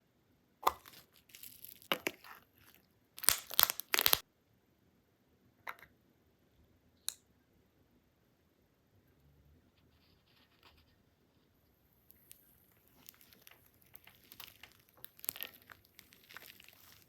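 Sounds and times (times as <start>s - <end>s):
slime popping: 0.6s - 4.2s, 12.1s - 17.0s
slime crackling when pulled apart: 3.2s - 4.2s, 12.2s - 17.0s.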